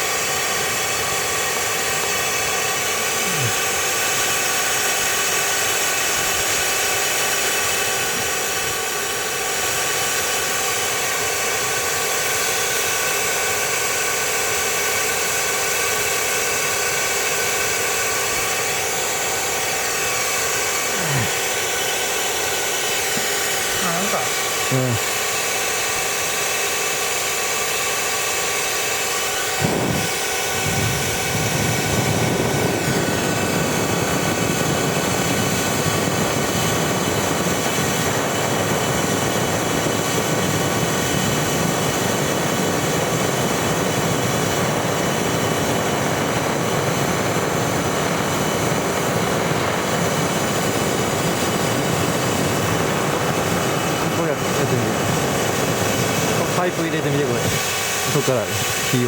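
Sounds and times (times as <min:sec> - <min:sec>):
whine of steady tones: 0:00.0 - 0:59.0
roaring rush of air and fire: 0:29.1 - 0:59.0.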